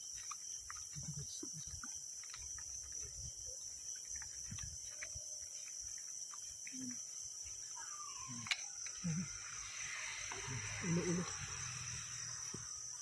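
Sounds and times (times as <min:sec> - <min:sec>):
faint clicks and rustles: 0:00.0 - 0:13.0
night insects chirring: 0:00.0 - 0:13.0.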